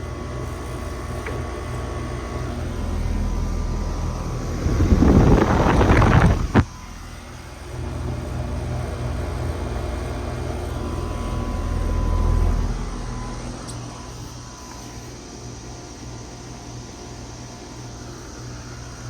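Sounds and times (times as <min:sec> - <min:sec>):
air conditioner compressor hum: 0:00.0 - 0:19.0
condenser fan turning: 0:00.0 - 0:19.0
loud rushing noise: 0:03.8 - 0:06.7.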